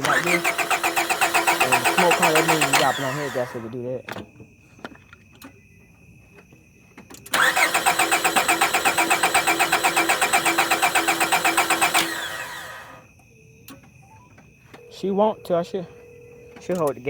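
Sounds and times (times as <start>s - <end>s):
car engine cranking: 0.0s - 5.5s, 7.1s - 13.1s.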